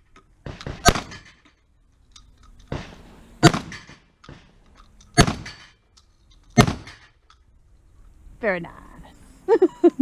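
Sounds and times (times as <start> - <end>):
gunshots with ringing echo: 0.4 - 1.4, 2.7 - 5.7, 6.6 - 7.1.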